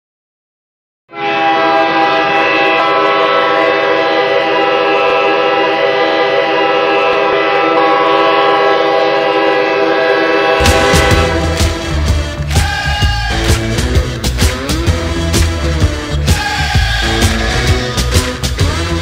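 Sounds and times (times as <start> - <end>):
goal horn sounding a chord: 1.1 - 16.2.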